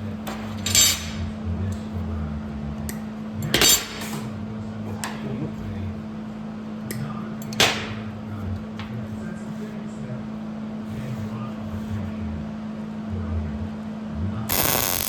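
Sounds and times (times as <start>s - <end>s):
steady low hum: 0.0s - 15.0s
loud metal clanks: 3.4s - 4.4s.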